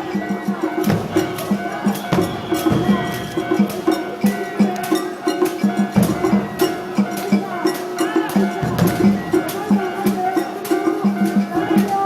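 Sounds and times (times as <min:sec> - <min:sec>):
held high flute note: 0:00.0 - 0:05.5
metallic strikes: 0:00.0 - 0:10.9
festival drums: 0:00.0 - 0:12.0.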